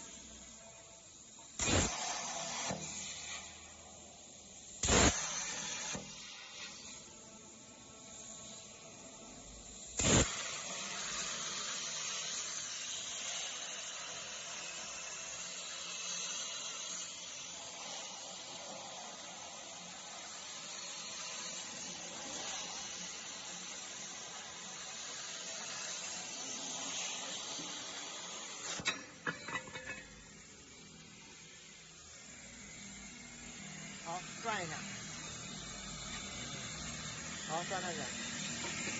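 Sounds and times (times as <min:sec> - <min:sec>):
plasma torch hissing: 0:00.0 - 0:38.9
plasma arc striking crack: 0:01.6 - 0:03.4, 0:04.8 - 0:06.9, 0:09.9 - 0:12.8.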